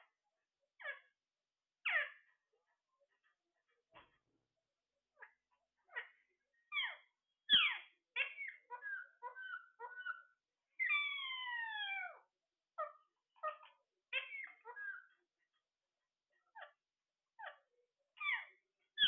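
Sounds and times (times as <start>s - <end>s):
parrot chirping and squawking: 0.8s - 1.1s, 1.8s - 2.3s, 5.2s - 15.2s, 16.4s - 16.8s, 17.4s - 17.6s, 18.2s - 19.0s.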